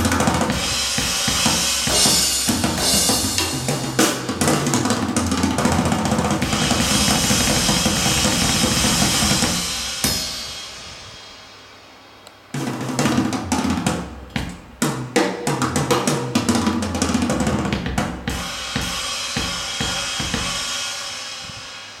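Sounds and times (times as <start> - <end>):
drum kit through speakers: 0.0 - 22.0.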